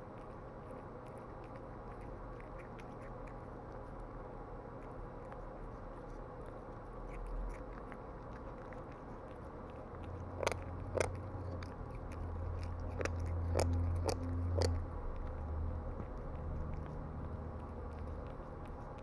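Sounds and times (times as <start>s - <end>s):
cat chewing wet food: 0.0s - 19.0s.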